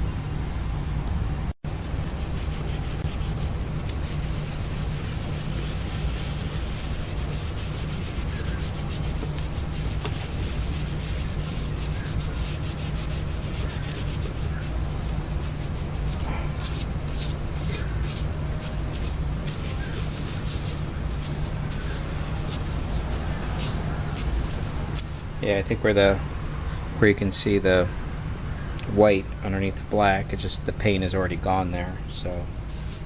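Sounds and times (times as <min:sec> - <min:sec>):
sponge scrubbing a plate: 0:01.7 - 0:25.3, 0:32.7 - 0:33.0.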